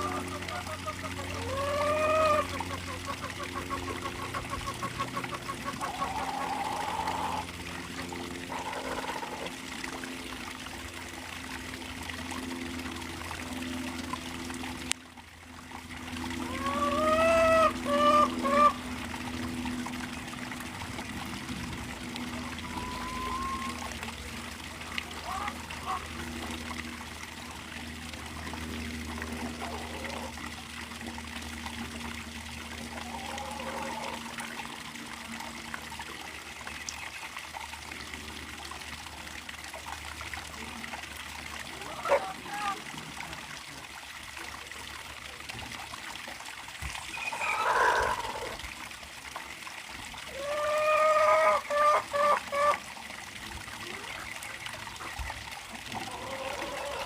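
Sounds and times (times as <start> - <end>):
chicken calls: 0.0 - 7.4, 16.5 - 18.8, 50.4 - 52.8
water trickling: 0.0 - 57.0.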